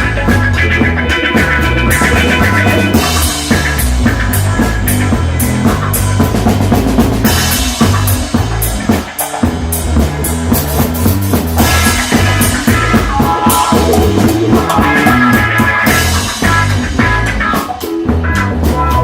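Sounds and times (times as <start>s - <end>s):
bass guitar: 0.0s - 19.0s
drum kit groove: 0.0s - 19.0s
guitar chords: 0.0s - 19.0s.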